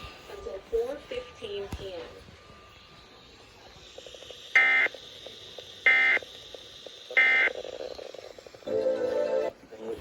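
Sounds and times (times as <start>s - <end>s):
shrill buzzy data bursts: 2.4s - 9.5s.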